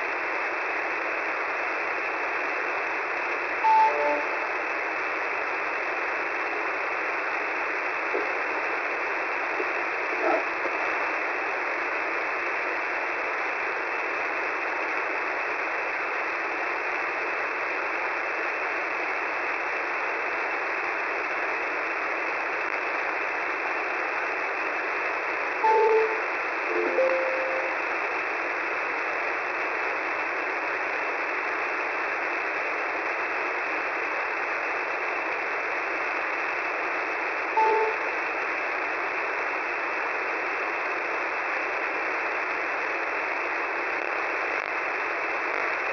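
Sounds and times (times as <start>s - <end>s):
radio static hiss: 0.0s - 45.9s
faint radio tones and beeps: 3.6s - 4.7s, 9.6s - 10.7s, 25.6s - 27.9s, 37.5s - 38.2s.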